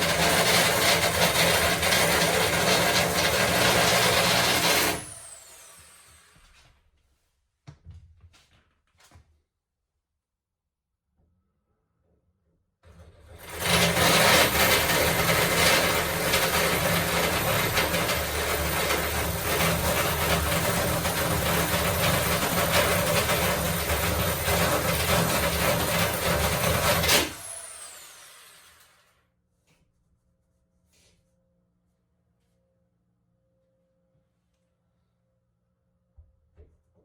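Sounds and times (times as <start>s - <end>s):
power drill boring into wood: 0.0s - 6.3s, 13.3s - 29.1s.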